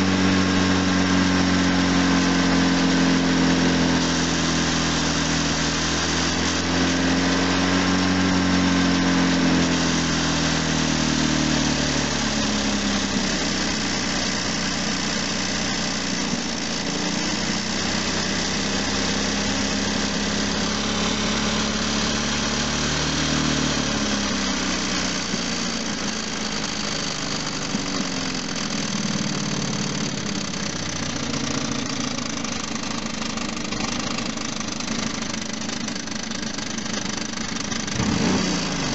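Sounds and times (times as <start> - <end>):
petrol engine revving: 0.0 - 38.9.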